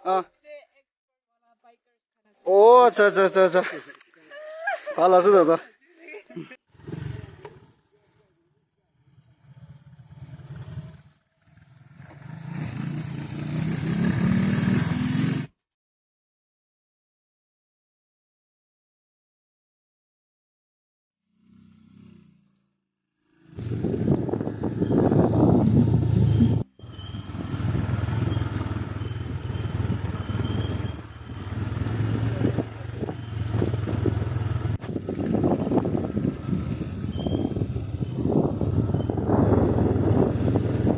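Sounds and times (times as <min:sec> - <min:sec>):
motorcycle engine revving: 0:06.7 - 0:15.5, 0:21.3 - 0:40.9.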